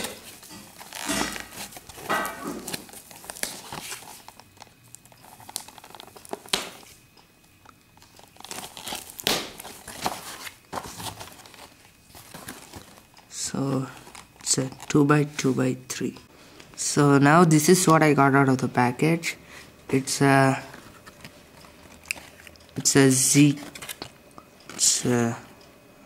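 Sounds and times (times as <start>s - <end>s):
packaging crinkling: 0.0s - 15.4s, 20.6s - 25.0s.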